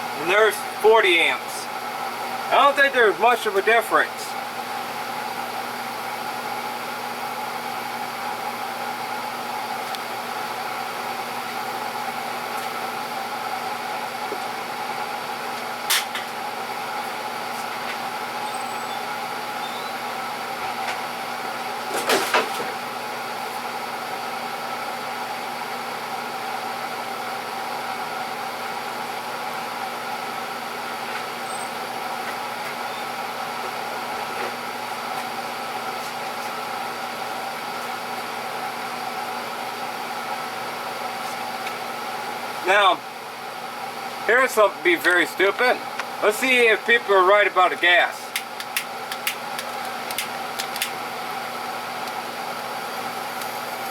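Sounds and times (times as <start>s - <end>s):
battery charger humming: 48.3s - 53.9s.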